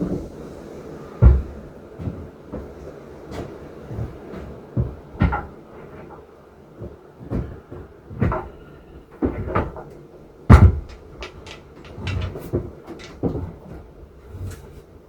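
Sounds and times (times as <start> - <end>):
shower unit knocks and clunks: 9.2 - 14.7.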